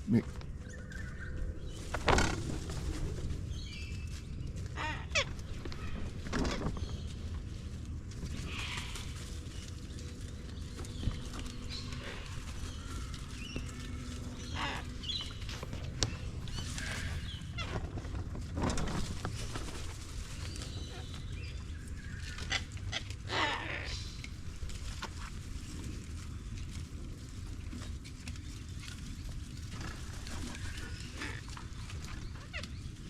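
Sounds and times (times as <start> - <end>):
animal cries: 4.6 - 6.6, 11.2 - 18.1, 22.3 - 24.4.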